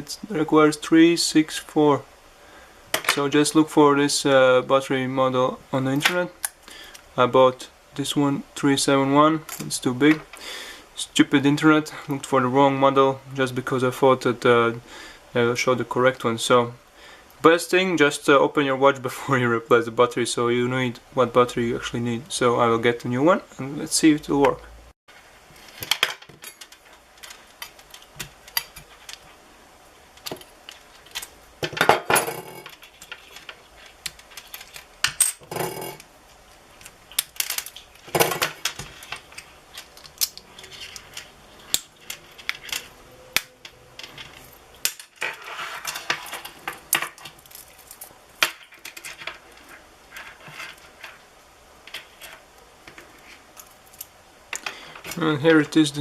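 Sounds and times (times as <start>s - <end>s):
rustling scrapes: 44.0s - 48.2s, 48.8s - 51.3s, 52.0s - 53.6s.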